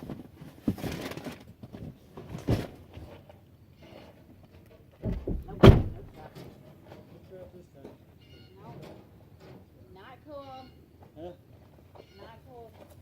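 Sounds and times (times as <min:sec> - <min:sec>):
handling knocks and clatters: 0:04.5 - 0:07.2.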